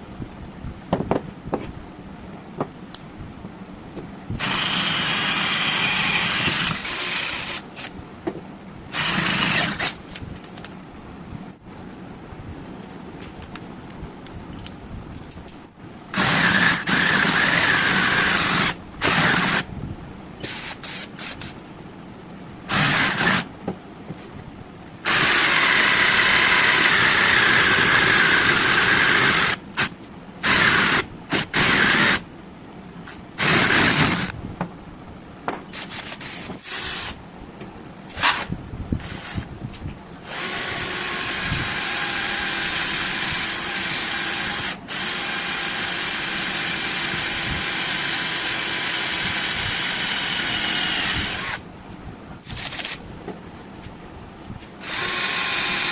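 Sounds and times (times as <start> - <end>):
cordless drill motor running: 4.4 - 7.9, 8.9 - 10.0, 16.2 - 19.7, 22.7 - 23.5, 25.1 - 32.2, 33.4 - 34.3, 40.2 - 51.6, 54.8 - 55.9.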